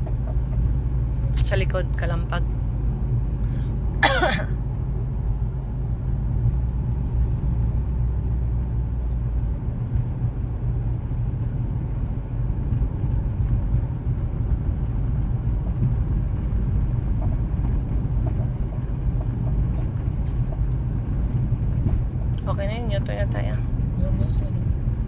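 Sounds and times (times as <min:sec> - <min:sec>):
engine and road noise rumble: 0:00.0 - 0:25.0.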